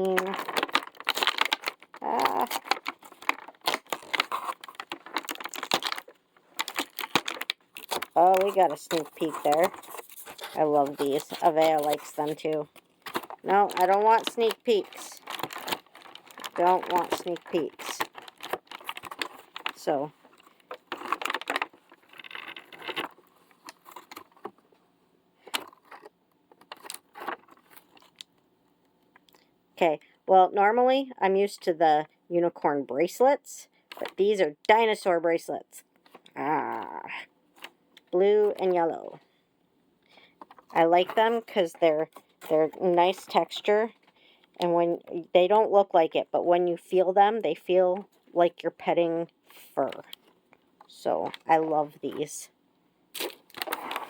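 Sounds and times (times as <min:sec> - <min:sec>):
packaging crinkling and tearing: 0:00.0 - 0:24.6, 0:25.4 - 0:28.3, 0:53.1 - 0:54.0.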